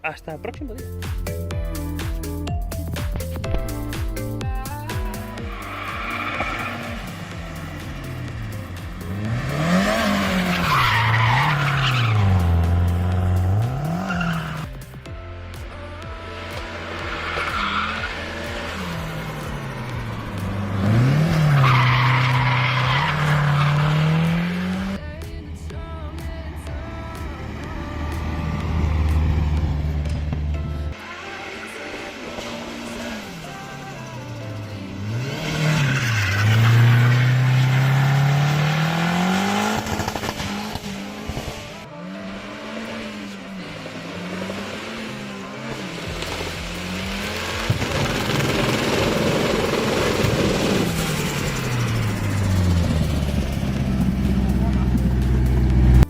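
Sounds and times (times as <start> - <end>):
car engine revving hard: 5.4 - 14.8, 16.4 - 25.0, 34.9 - 56.0
tyres squealing: 5.4 - 14.8, 16.7 - 25.0, 35.1 - 40.6.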